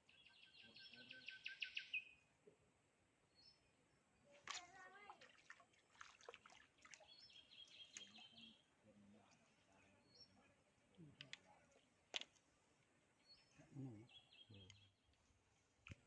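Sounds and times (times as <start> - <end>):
bird chirps: 0.0 - 2.2, 7.0 - 8.6, 13.2 - 15.1.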